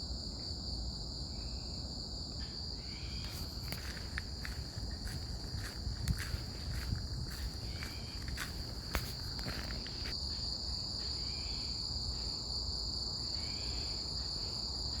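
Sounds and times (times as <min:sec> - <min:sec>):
crickets trilling: 0:00.0 - 0:15.0
footsteps on path: 0:03.2 - 0:10.2.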